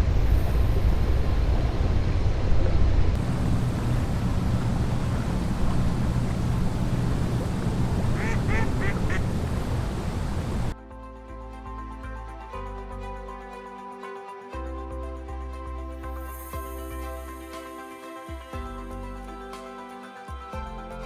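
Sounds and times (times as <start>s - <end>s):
bird calling: 3.2s - 10.8s
low outdoor rumble: 3.2s - 10.8s.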